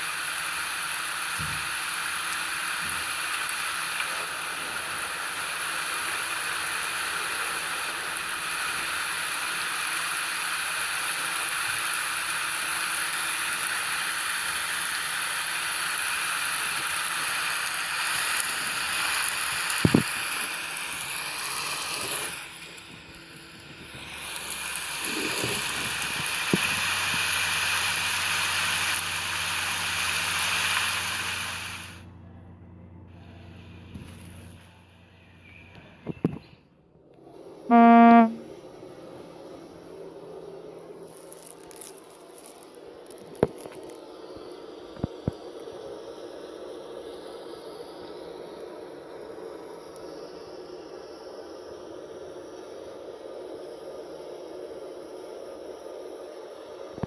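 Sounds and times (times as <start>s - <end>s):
steady rain hiss: 0.0s - 32.0s, 39.5s - 57.0s.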